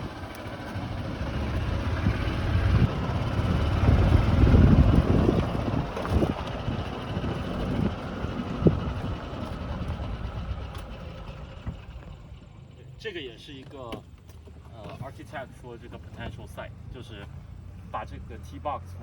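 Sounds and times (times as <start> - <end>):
vehicle engine and road noise: 0.0 - 19.0.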